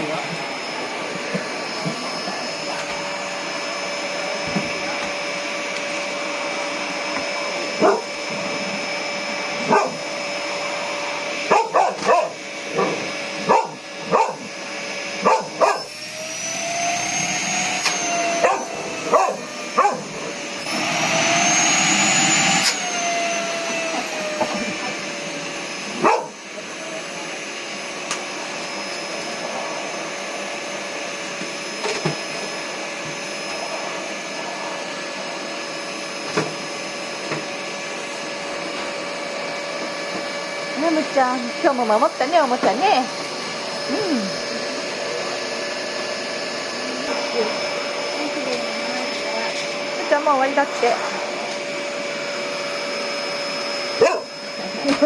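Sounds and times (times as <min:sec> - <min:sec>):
vacuum cleaner running: 0:00.0 - 0:55.0
small dog barking: 0:07.8 - 0:08.1, 0:09.7 - 0:10.0, 0:11.5 - 0:14.5, 0:15.2 - 0:15.9, 0:18.4 - 0:20.1, 0:26.0 - 0:26.4, 0:54.0 - 0:54.3.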